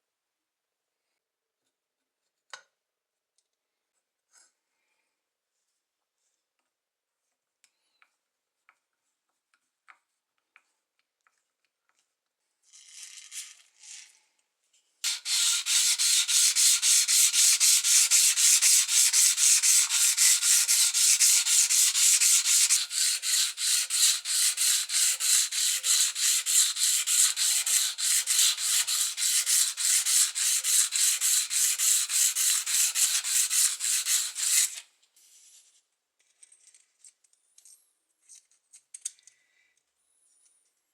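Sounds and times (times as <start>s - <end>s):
knife blade rubbing on abrasive: 15.0s - 34.8s
scratchy scrape: 15.0s - 35.7s.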